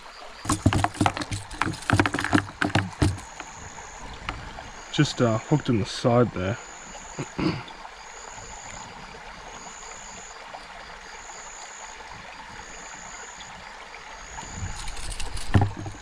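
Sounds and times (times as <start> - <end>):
flowing water hiss: 0.0 - 16.0
rustling: 0.4 - 3.5, 14.7 - 16.0.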